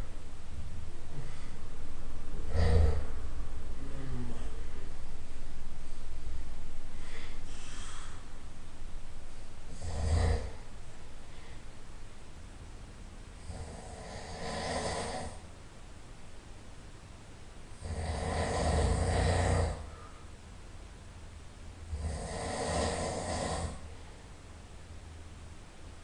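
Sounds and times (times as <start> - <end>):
low rumble: 0.0 - 13.4
person snoring: 2.5 - 3.2, 3.8 - 4.9, 9.7 - 10.6, 13.4 - 15.4, 17.8 - 19.9, 21.9 - 23.9.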